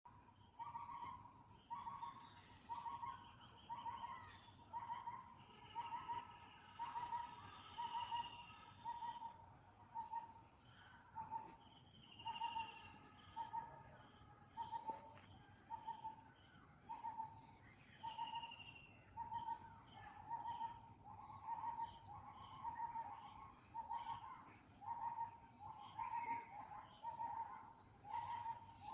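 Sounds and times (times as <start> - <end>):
high insect drone: 0.1 - 20.0.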